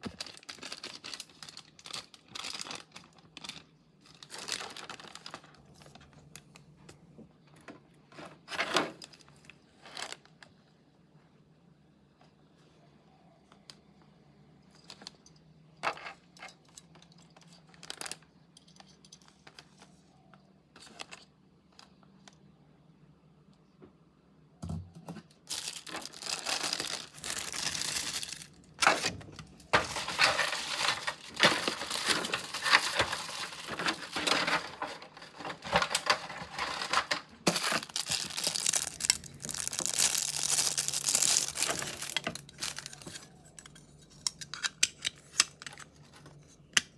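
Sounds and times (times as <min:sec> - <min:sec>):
wrapping crinkling and tearing: 0:00.0 - 0:06.0, 0:17.4 - 0:18.4, 0:25.4 - 0:44.5.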